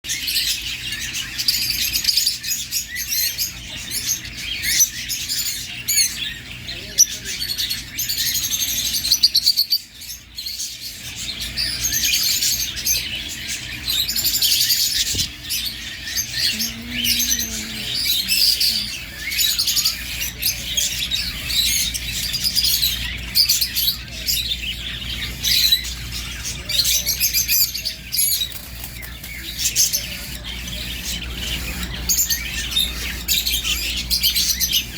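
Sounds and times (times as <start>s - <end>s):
small birds chirping: 0.0s - 34.9s.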